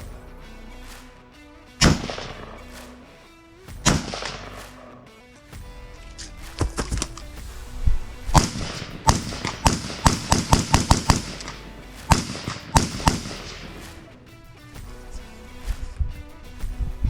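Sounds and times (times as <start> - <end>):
gunshots: 1.8 - 3.2, 3.8 - 5.1, 6.2 - 7.6, 8.2 - 15.0.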